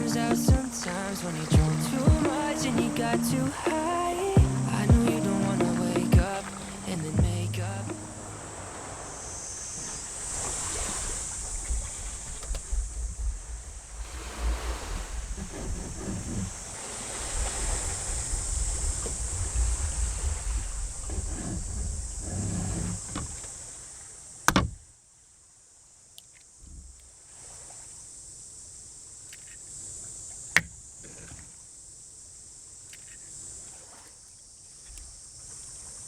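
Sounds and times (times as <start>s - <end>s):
wind rumbling on microphone: 0.0s - 9.2s, 9.8s - 23.5s
surf washing onto beach: 0.0s - 24.1s.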